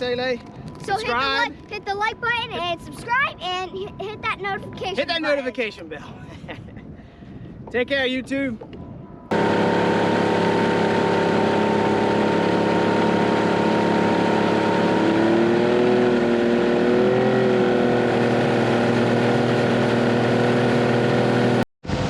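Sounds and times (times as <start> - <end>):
outboard engine running: 9.3 - 22.0.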